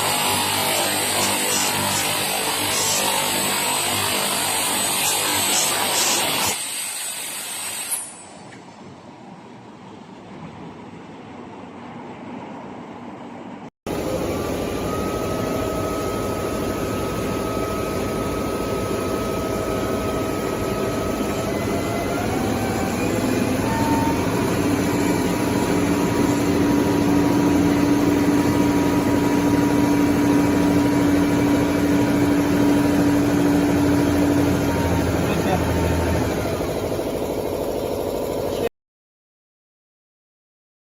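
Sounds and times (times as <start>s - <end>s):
duct forming machine humming: 13.9s - 38.6s.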